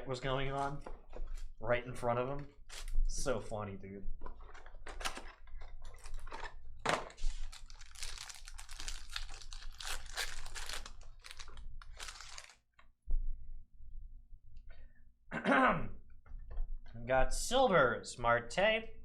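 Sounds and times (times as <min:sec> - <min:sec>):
card pack wrappers crinkling and tearing: 0:04.9 - 0:12.7.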